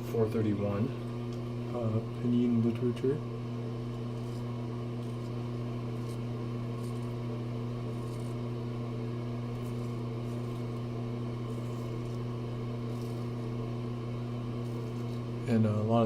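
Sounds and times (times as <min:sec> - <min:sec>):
low electrical hum: 0:00.0 - 0:16.0
razor scraping stubble: 0:03.7 - 0:15.7.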